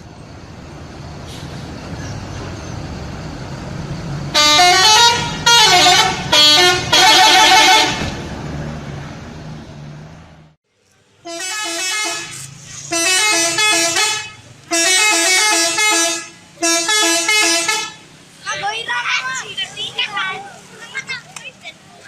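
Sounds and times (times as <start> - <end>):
bus engine rumble: 0.0 - 22.0
bus horn melody: 4.3 - 8.3, 11.2 - 18.2.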